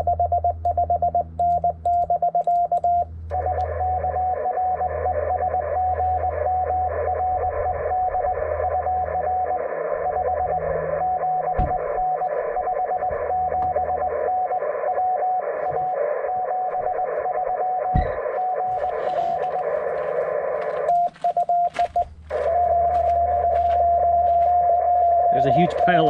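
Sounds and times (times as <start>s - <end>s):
quick beeps: 0.0s - 9.4s, 20.9s - 26.0s
morse code tones: 0.0s - 26.0s
steady unbroken tone: 0.0s - 26.0s
radio band hiss: 3.4s - 26.0s.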